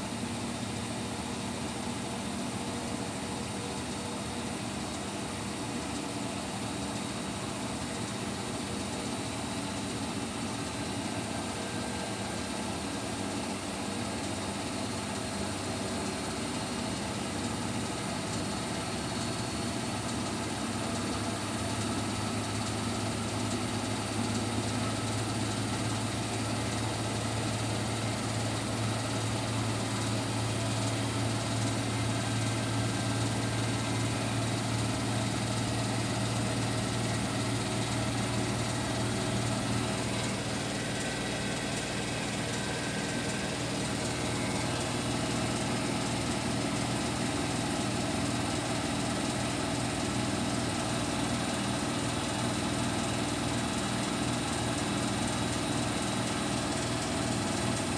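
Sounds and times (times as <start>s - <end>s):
washing machine motor hum: 14.6s - 57.9s.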